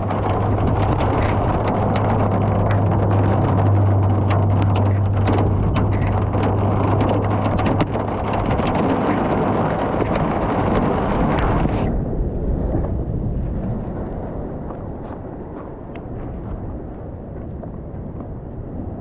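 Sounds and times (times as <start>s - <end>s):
hail and rain pelting down: 0.0s - 11.9s
steady low hum: 0.0s - 19.0s.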